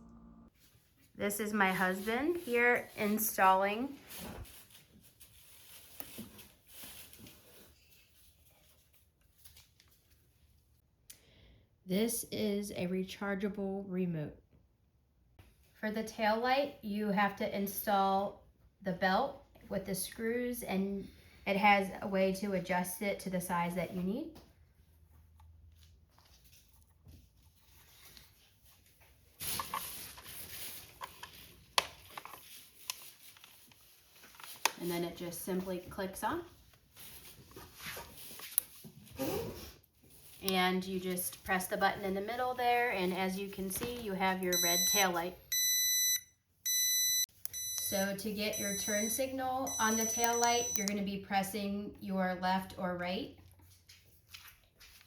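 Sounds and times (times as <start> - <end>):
plastic parts rustling: 29.4 - 34.8.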